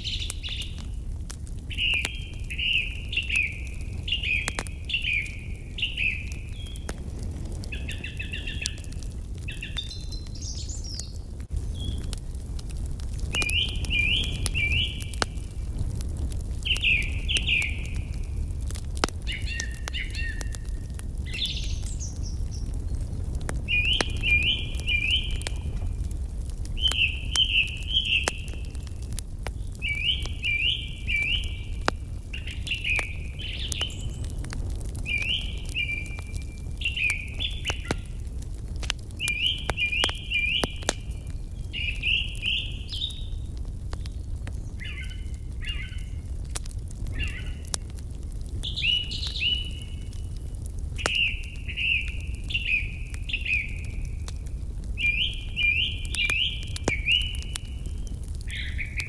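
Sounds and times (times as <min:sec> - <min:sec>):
songbird chirping: 0:00.0 - 0:00.9, 0:01.7 - 0:06.9, 0:07.6 - 0:12.1, 0:13.4 - 0:15.4, 0:16.6 - 0:18.2, 0:19.3 - 0:26.0, 0:26.8 - 0:28.9, 0:29.6 - 0:34.4, 0:35.0 - 0:38.2, 0:39.2 - 0:43.4, 0:48.6 - 0:50.2, 0:51.0 - 0:54.1, 0:55.0 - 0:57.7, 0:58.5 - 0:59.0
wood fire crackling and popping: 0:00.0 - 0:59.0.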